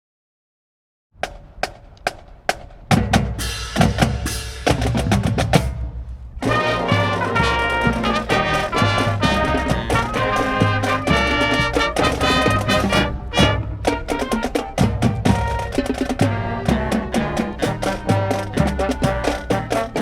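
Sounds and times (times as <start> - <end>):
band playing: 3.0 - 20.0
held horn chords: 6.4 - 20.0.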